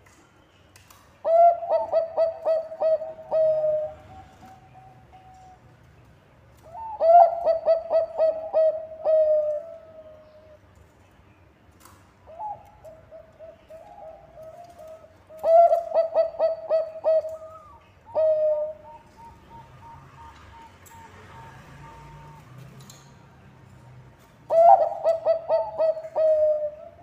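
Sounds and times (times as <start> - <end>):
dove cooing: 1.2 - 5.6, 6.6 - 10.6, 12.3 - 22.4, 24.5 - 27.0.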